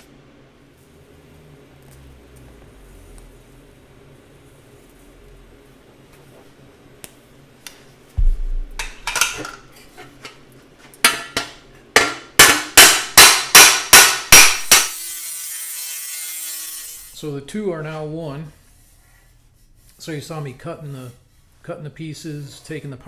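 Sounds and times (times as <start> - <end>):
hammer striking sheet steel: 11.0 - 15.2.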